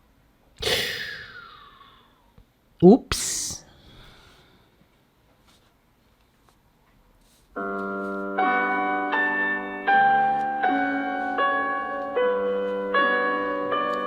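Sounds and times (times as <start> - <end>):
piano-like ringtone melody: 7.6 - 14.0.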